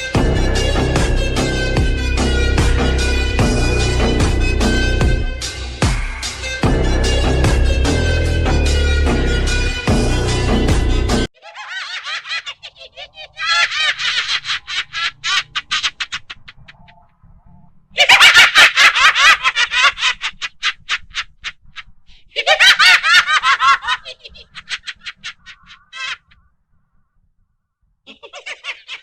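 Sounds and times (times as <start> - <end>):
high-pitched rapid laughter: 11.4 - 17.0, 17.9 - 26.4, 28.1 - 29.0.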